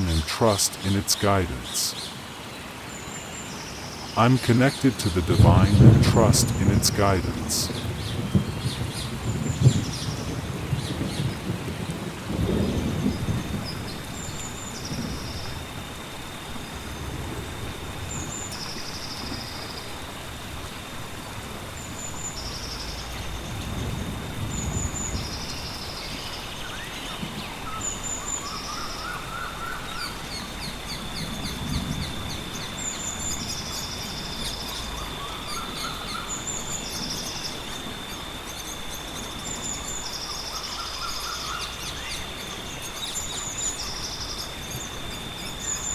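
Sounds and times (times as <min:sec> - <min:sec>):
steady rain: 0:00.0 - 0:45.9
low rolls of thunder: 0:07.6 - 0:15.3
thin steady high tone: 0:22.1 - 0:45.9.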